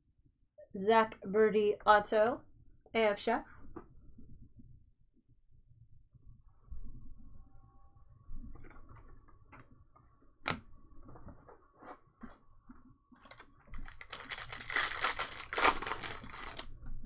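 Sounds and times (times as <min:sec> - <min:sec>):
wrapper tearing and crinkling: 0:13.2 - 0:16.7.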